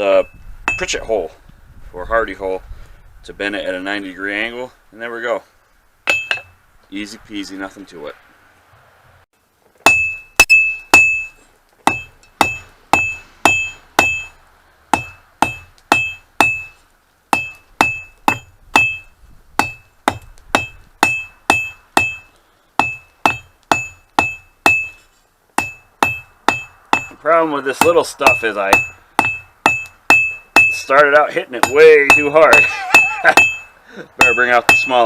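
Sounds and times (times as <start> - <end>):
hammer striking steel on anvil: 6.1 - 6.6, 9.8 - 16.8, 17.4 - 25.0, 25.6 - 31.0, 31.6 - 35.0.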